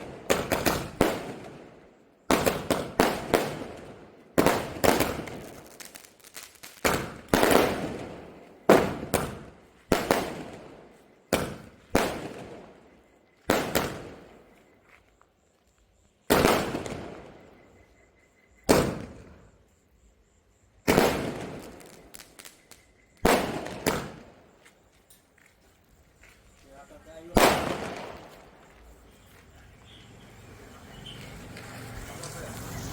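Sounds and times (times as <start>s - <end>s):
firework bangs echoing: 0.0s - 14.5s, 16.3s - 17.6s, 18.6s - 19.5s, 20.8s - 24.6s, 27.1s - 28.8s.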